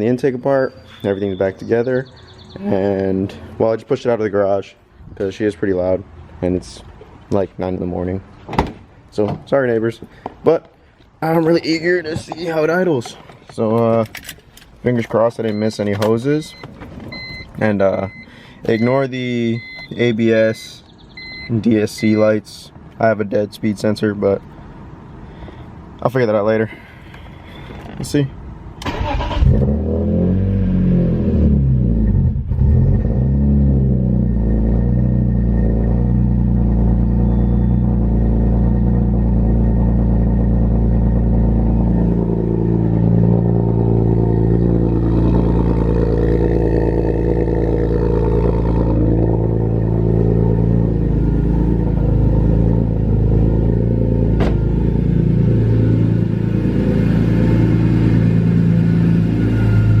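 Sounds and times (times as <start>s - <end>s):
car engine idling with loud exhaust: 33.1s - 60.0s.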